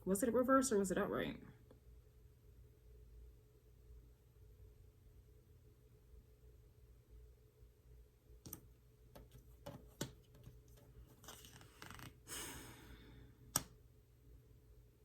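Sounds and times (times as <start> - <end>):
cards clicking and tapping on table: 8.4 - 8.6, 9.2 - 12.1
card sliding on card: 11.1 - 12.8.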